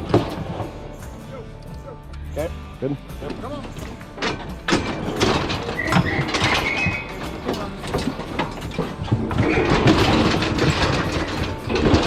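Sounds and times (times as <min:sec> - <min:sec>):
metal cattle chute rattling: 0:00.0 - 0:01.5, 0:03.1 - 0:12.0
short squeak: 0:05.6 - 0:07.3.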